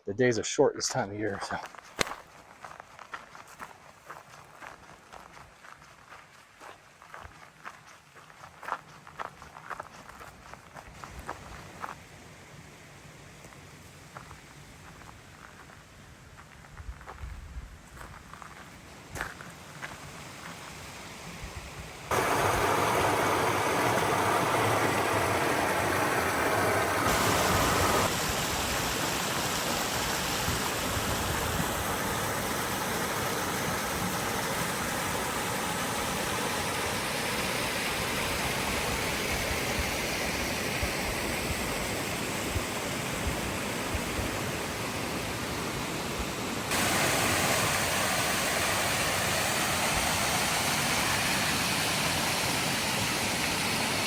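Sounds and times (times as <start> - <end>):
rushing creek water: 22.1 - 54.0.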